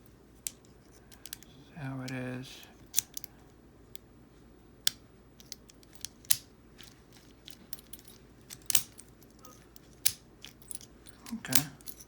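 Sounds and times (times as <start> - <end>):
padlock clicking and clinking: 0.5 - 1.5, 2.8 - 3.4, 4.9 - 12.0.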